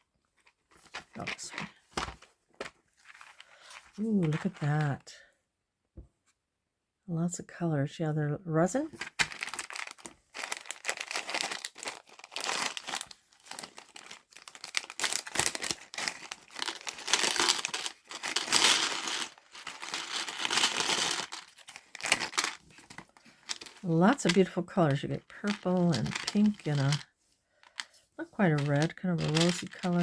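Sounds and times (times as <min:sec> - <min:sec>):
plastic packaging crinkling: 0:09.0 - 0:30.0.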